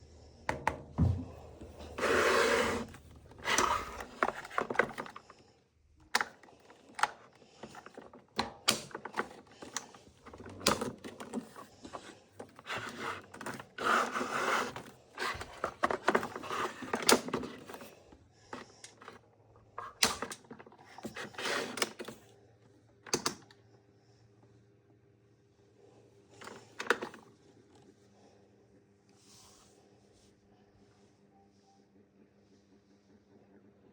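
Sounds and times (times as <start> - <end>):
plastic parts clicking and knocking: 2.8 - 5.3, 6.0 - 17.9, 18.5 - 19.2, 19.8 - 22.2, 23.0 - 23.5, 26.4 - 27.3.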